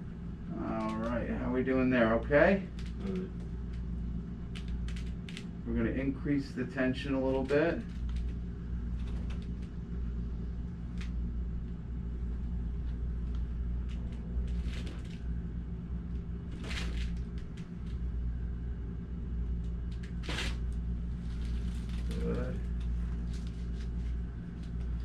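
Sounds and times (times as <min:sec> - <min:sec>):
steady low hum: 0:00.0 - 0:25.0
faint rustles and clicks: 0:07.2 - 0:15.4, 0:19.5 - 0:25.0.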